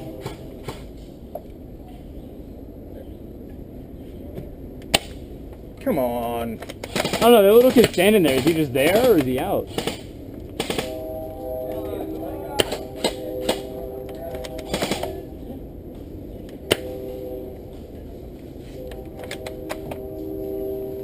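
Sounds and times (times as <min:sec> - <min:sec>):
airsoft gunfire: 0:06.8 - 0:11.0, 0:14.7 - 0:15.2.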